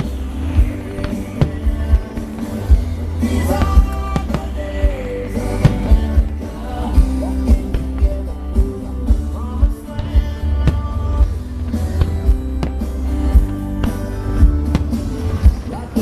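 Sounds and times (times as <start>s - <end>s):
person singing: 0.0s - 12.6s
rock music: 0.0s - 16.0s.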